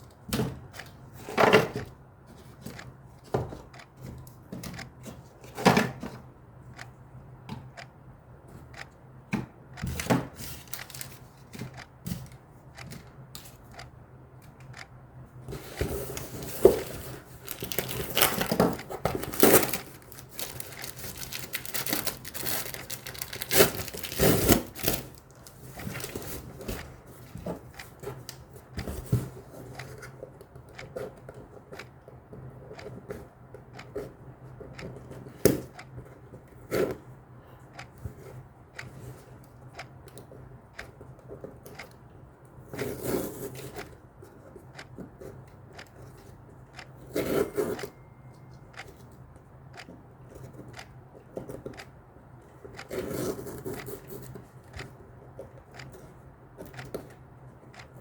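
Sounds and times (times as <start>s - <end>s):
packaging rustling: 10.4s - 11.3s, 16.2s - 26.5s
packaging scraping: 10.4s - 11.3s, 15.9s - 26.5s.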